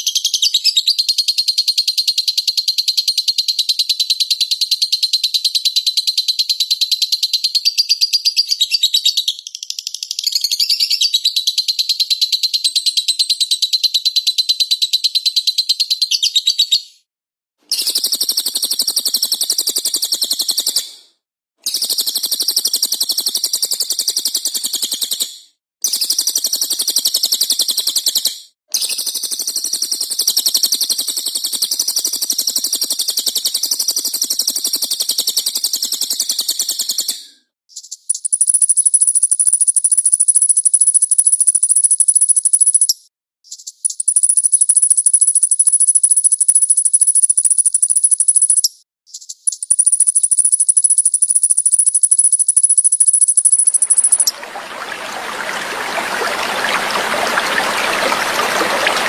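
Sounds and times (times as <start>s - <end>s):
songbird chirping: 52.3s - 59.0s.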